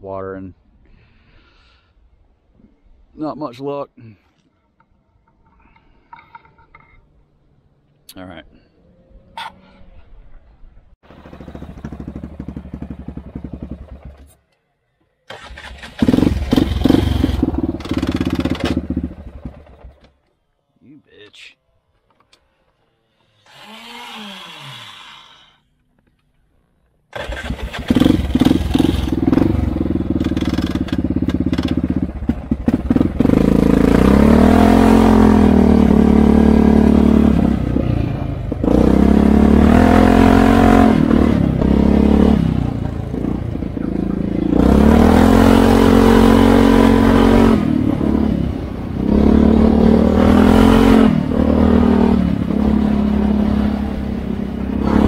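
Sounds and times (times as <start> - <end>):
atv engine revving: 11.1 - 14.4, 15.3 - 20.1, 27.1 - 55.0.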